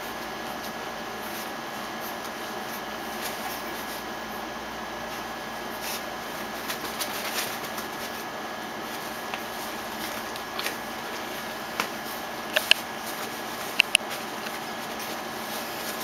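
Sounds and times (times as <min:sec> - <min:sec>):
puppies paws scuffing: 0:05.7 - 0:16.0.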